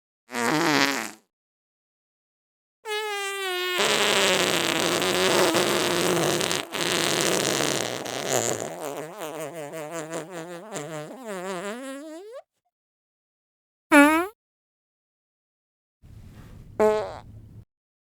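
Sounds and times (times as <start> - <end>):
fart sound effect: 0.3 - 1.2, 2.9 - 12.4, 13.9 - 14.4, 16.5 - 17.6.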